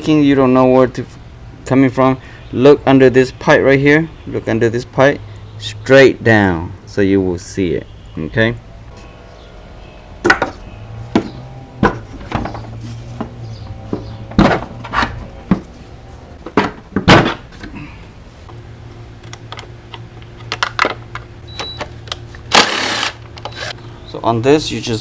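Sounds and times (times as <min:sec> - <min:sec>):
steady low hum: 0:06.5 - 0:25.0
clicks and knocks of parts: 0:19.2 - 0:23.8.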